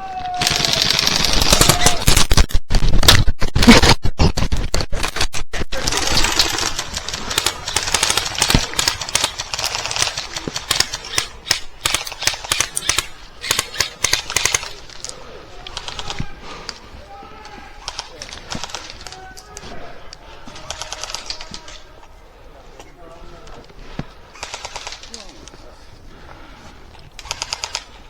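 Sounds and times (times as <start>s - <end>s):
airsoft guns firing: 0.3s - 2.4s, 5.8s - 14.9s, 24.4s - 25.3s, 27.2s - 28.0s.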